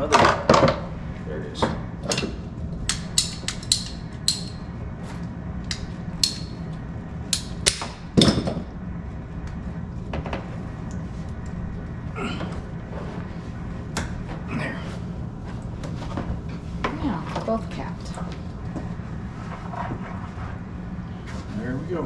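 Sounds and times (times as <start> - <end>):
steady low hum: 0.0 - 22.0
clicks of handling wire and tools: 1.6 - 4.7, 5.6 - 8.4.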